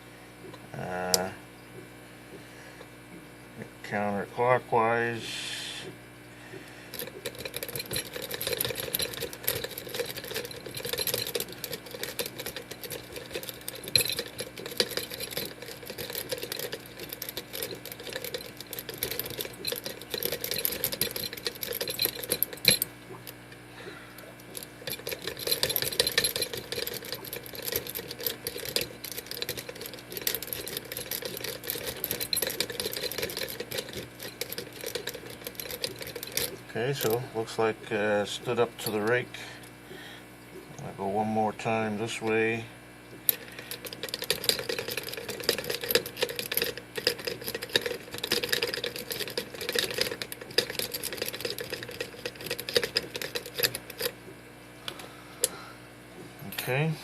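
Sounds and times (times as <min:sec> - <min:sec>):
lock pick rake rattling in lock: 0:06.9 - 0:22.9, 0:24.4 - 0:37.2, 0:43.3 - 0:54.2.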